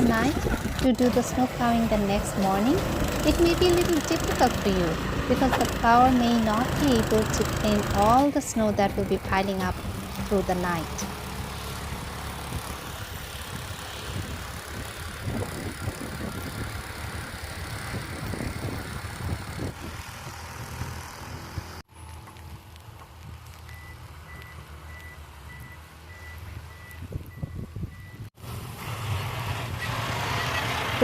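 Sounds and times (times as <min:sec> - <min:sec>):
snow machine engine rumbling: 0:00.0 - 0:22.2, 0:28.4 - 0:31.0
wind and snow noise: 0:00.0 - 0:31.0
reversing alarm beeping: 0:23.7 - 0:28.3.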